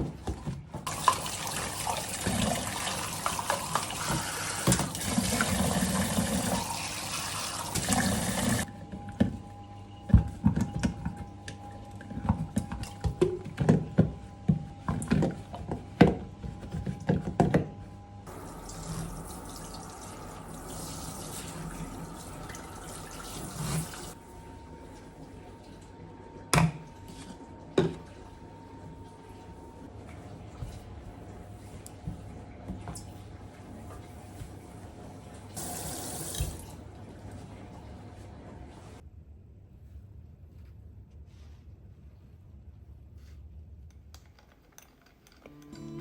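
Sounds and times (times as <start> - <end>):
tap running into a sink: 35.6 - 36.8.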